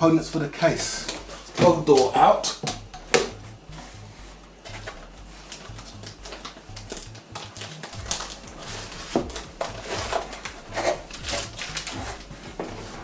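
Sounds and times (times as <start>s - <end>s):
steady low hum: 0.0s - 13.0s
packaging rustling and scraping: 3.7s - 13.0s.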